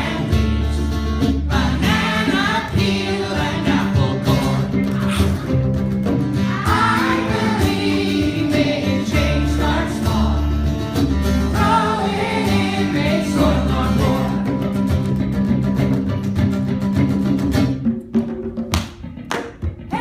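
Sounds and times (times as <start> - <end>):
choir-like singing: 0.0 - 5.3, 6.4 - 10.8, 11.5 - 14.7
low bass notes: 0.0 - 17.9.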